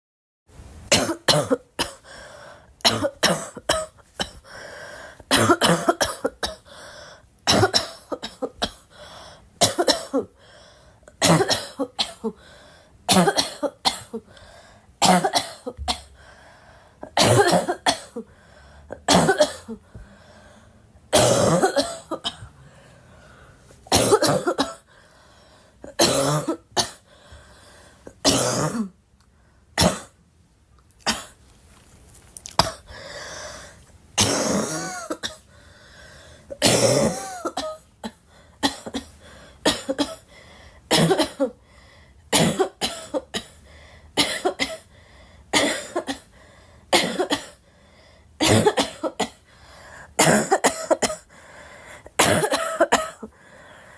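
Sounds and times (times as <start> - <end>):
girl coughing: 0.9 - 2.0, 2.8 - 4.4, 5.3 - 6.7, 7.5 - 8.9, 9.6 - 10.4, 11.2 - 12.4, 13.1 - 14.3, 15.0 - 16.1, 17.0 - 18.3, 19.0 - 19.8, 21.1 - 22.5, 23.9 - 24.9, 25.9 - 27.0, 28.2 - 29.0, 34.2 - 35.4, 36.5 - 40.3, 40.9 - 41.6, 42.3 - 43.6, 44.2 - 44.9, 45.6 - 46.3, 46.9 - 47.6, 48.4 - 49.4, 50.2 - 51.3, 52.1 - 53.3.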